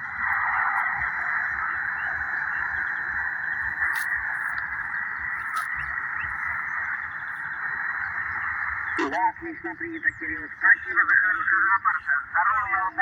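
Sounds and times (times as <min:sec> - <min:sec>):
static crackles: 0:00.0 - 0:13.0
radio receiver hissing: 0:00.6 - 0:09.9.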